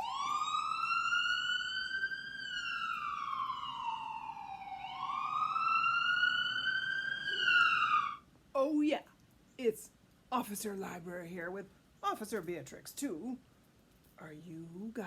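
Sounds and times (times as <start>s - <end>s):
police siren wailing: 0.0s - 8.3s.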